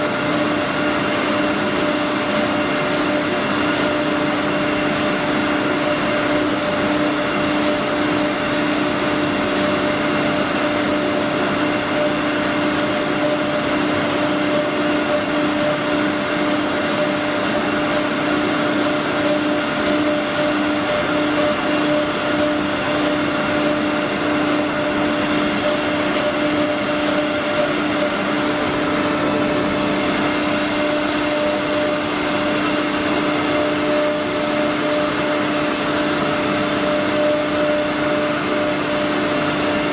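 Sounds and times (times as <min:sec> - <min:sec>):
rushing machine noise: 0:00.0 - 0:39.9
wood router whining: 0:25.4 - 0:39.9.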